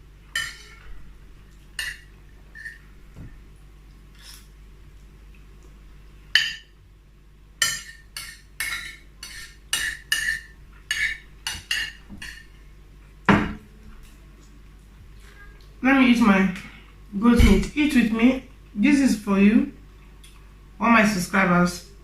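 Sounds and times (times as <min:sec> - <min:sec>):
cutlery clinking on a plate: 0:07.6 - 0:12.5.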